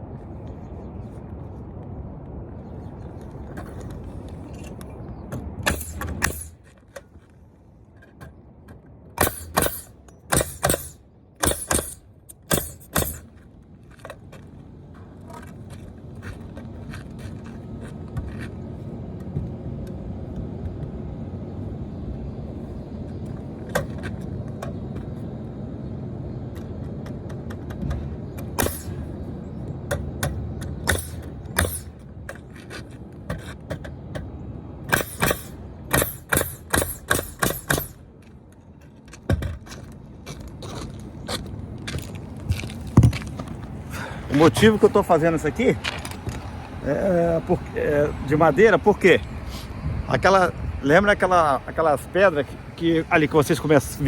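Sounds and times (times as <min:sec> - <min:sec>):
nail gun firing into wood: 0:05.6 - 0:06.6, 0:09.2 - 0:13.3, 0:28.4 - 0:29.0, 0:29.9 - 0:32.0, 0:34.9 - 0:38.0.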